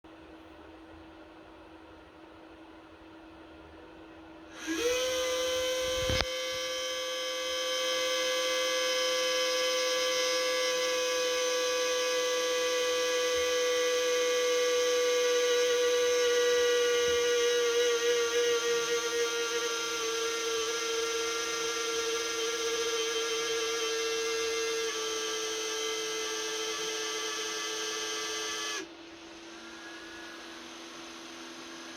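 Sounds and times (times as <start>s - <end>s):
cooling fans high-pitched whine: 0.1s - 31.9s
click: 6.0s - 6.3s.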